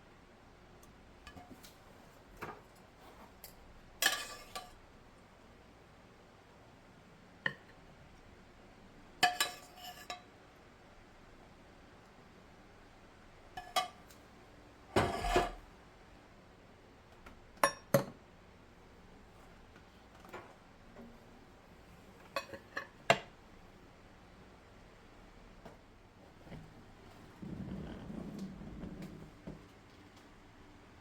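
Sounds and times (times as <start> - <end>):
dishes and utensils clinking: 4.0 - 4.8, 9.2 - 10.3, 22.3 - 23.3.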